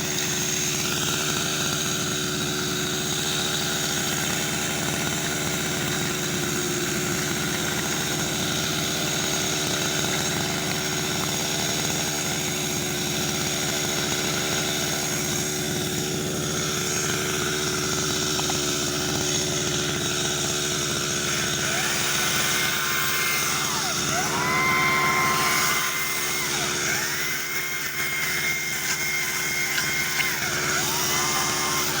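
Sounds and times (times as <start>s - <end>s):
chainsaw engine revving: 0.0s - 32.0s.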